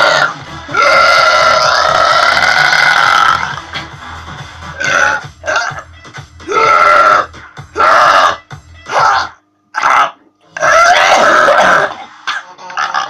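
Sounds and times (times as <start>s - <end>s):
background music with steady beat: 0.0s - 9.7s
woman burping loudly: 10.6s - 12.0s.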